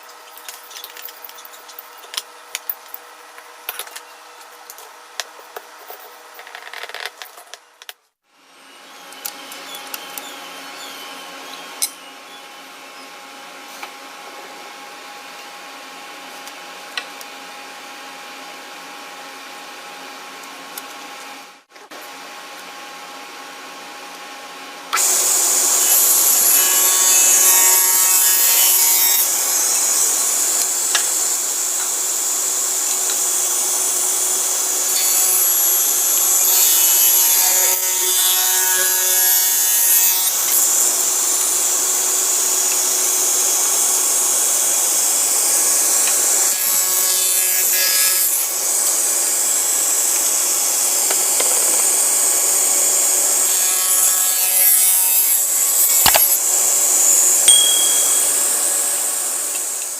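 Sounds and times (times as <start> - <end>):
circular saw cutting wood: 25.0 - 59.9.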